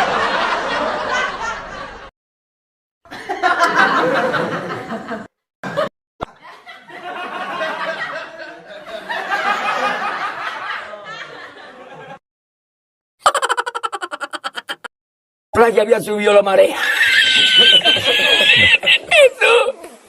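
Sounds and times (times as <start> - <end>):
people laughing: 0.0 - 2.1, 3.1 - 12.2, 13.2 - 14.9, 17.0 - 19.9.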